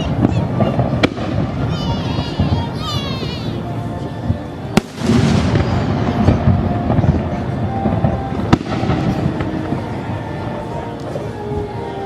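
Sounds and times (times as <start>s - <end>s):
fireworks sharp cracks: 0.0s - 3.6s, 4.2s - 11.4s
fireworks shell bursts booming: 4.8s - 9.8s.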